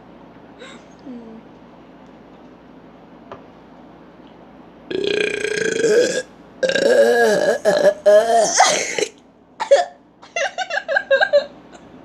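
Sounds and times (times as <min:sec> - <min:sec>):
person burping: 0:04.9 - 0:10.0.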